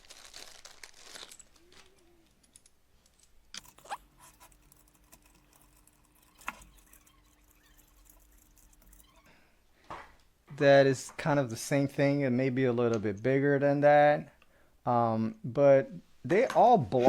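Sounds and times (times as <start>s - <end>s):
small metal parts clicking and scraping: 1.0s - 9.4s.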